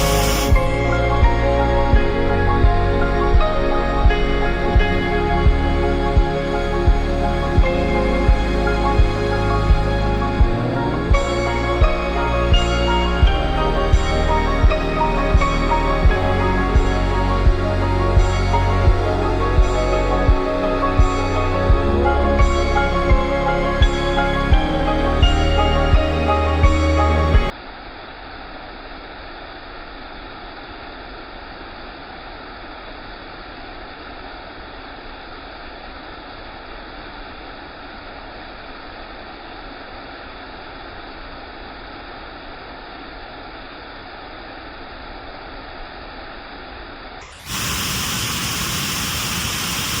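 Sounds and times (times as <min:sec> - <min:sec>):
waterfall rushing: 0:00.0 - 0:01.8, 0:47.3 - 0:50.0.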